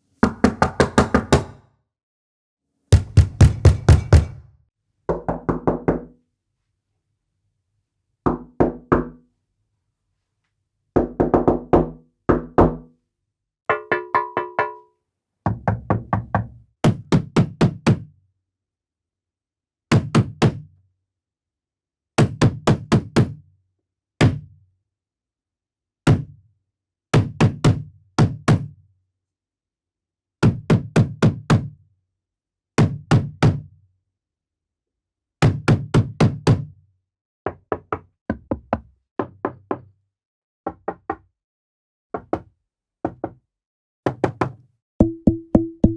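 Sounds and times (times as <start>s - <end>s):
knocking on a door: 0.2s - 1.6s, 2.9s - 4.5s, 5.1s - 6.1s, 8.3s - 9.2s, 11.0s - 12.9s, 15.4s - 18.0s, 37.4s - 39.9s, 40.7s - 41.2s, 42.2s - 43.4s, 44.1s - 45.9s.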